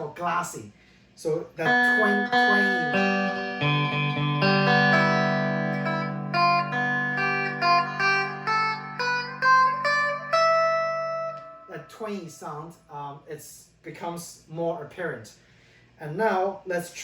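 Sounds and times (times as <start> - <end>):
clean electric guitar: 1.6 - 12.4.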